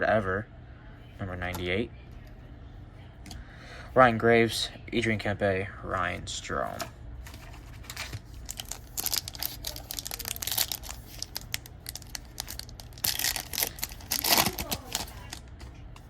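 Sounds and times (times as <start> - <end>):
wrapper crinkling and rustling: 7.2 - 15.8.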